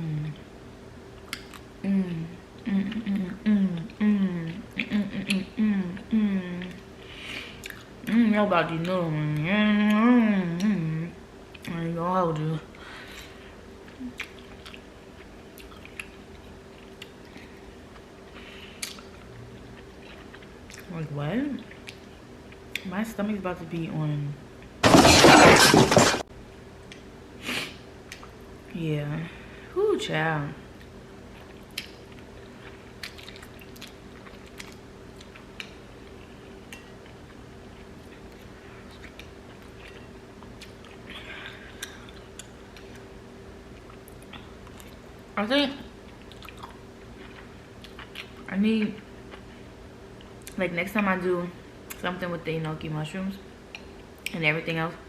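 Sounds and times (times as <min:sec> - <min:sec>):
faint steady hum: 0:00.0 - 0:55.0
person chewing noodles: 0:07.6 - 0:07.9, 0:13.9 - 0:18.2, 0:18.8 - 0:20.9, 0:30.8 - 0:43.1, 0:46.1 - 0:48.5.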